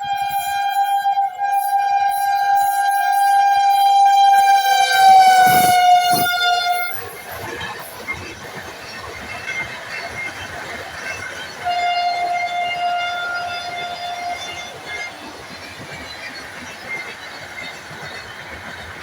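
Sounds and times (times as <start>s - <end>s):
train horn blast: 0.0s - 7.2s, 11.6s - 15.3s
train running: 0.0s - 19.0s.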